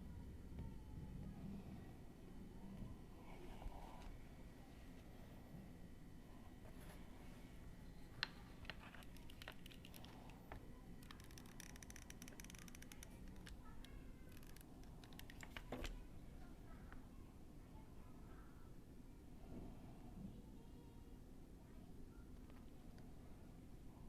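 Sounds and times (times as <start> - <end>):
small parts clicking on table: 8.2 - 10.4, 11.0 - 16.0.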